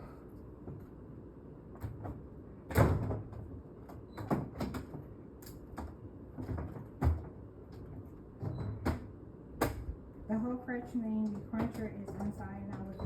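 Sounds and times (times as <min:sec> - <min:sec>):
air conditioner knocks and scrapes: 0:01.7 - 0:10.0, 0:11.0 - 0:13.0.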